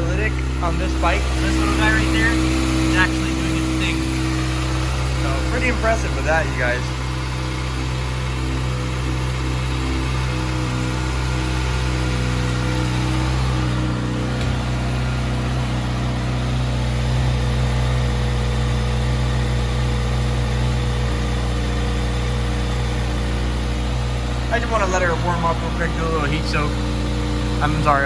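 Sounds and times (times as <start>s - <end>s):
motorcycle engine idling: 0.0s - 28.0s.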